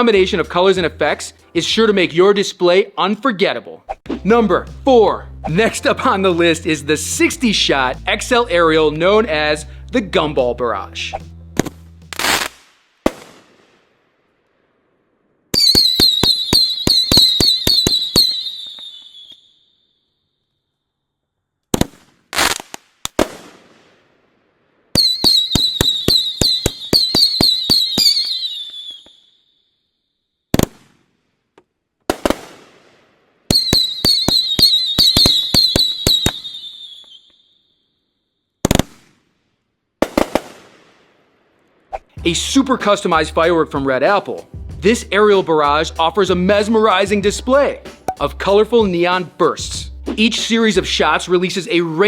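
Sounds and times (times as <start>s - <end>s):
firework high hiss: 11.6s - 13.7s
firework rapid shots: 11.6s - 13.8s, 15.6s - 18.4s, 21.7s - 24.0s, 25.0s - 28.3s, 30.5s - 31.1s, 32.1s - 36.6s, 38.6s - 39.2s, 40.0s - 41.1s.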